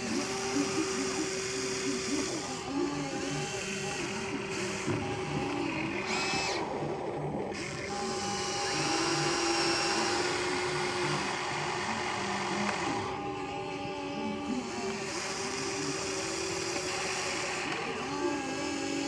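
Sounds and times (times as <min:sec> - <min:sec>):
electric toy motors whining: 0:00.0 - 0:19.0.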